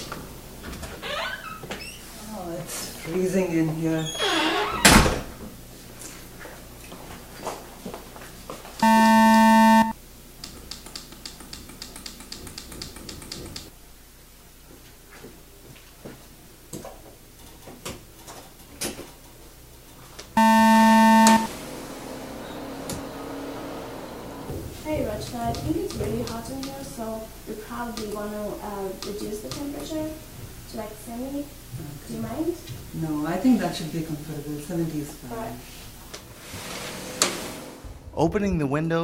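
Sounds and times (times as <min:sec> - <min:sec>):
harsh electronic buzzer: 0:08.8 - 0:10.0, 0:20.4 - 0:21.5.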